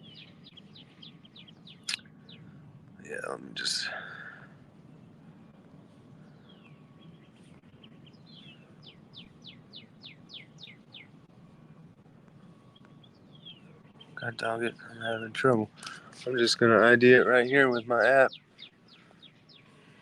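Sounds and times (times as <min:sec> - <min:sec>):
songbird whistling: 0:06.2 - 0:11.2, 0:12.5 - 0:16.6.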